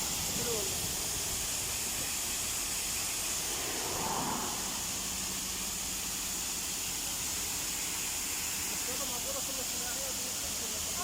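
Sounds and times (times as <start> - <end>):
water pouring down waterfall: 4.6 - 11.0.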